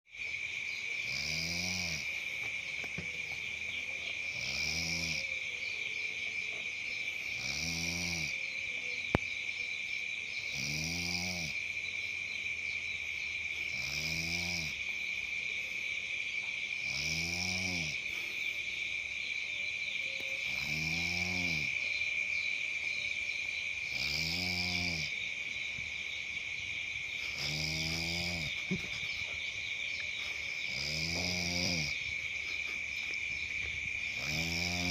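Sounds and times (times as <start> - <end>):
crickets chirring: 0.1 - 34.9
person snoring: 1.0 - 2.2, 4.3 - 5.3, 7.3 - 8.4, 10.5 - 11.6, 13.7 - 14.8, 16.8 - 18.2, 20.5 - 21.7, 23.8 - 25.1, 27.2 - 28.8, 30.6 - 32.0, 34.1 - 34.9.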